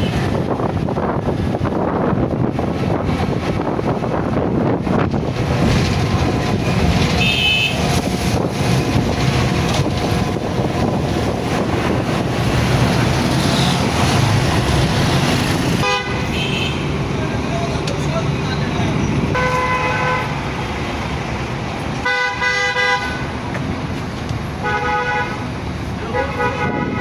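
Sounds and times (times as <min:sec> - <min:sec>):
busy street traffic: 0:00.0 - 0:27.0
vehicle horn toots: 0:07.2 - 0:08.0, 0:15.8 - 0:16.9, 0:19.4 - 0:20.3, 0:22.0 - 0:23.2, 0:24.6 - 0:25.4, 0:26.0 - 0:27.0.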